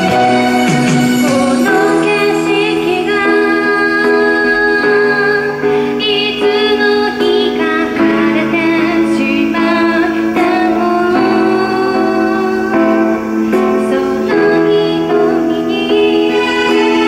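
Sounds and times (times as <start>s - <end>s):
instrumental accompaniment: 0.0s - 17.0s
woman singing: 0.0s - 17.0s.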